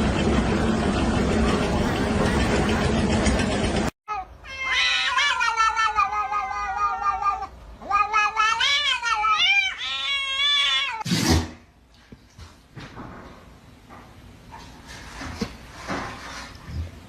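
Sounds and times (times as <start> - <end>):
cat yowling: 4.1 - 11.0.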